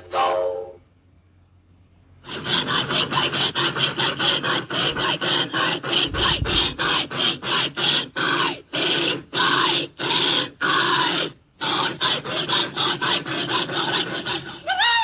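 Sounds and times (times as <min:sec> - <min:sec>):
cartoon steam locomotive chugging: 0:00.0 - 0:00.8, 0:02.2 - 0:15.0.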